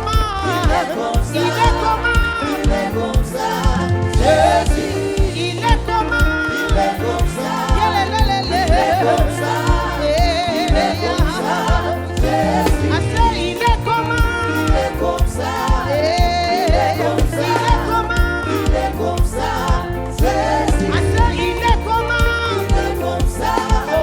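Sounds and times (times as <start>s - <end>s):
band with bass and drums: 0.0s - 24.0s
singers holding sustained notes: 0.0s - 24.0s.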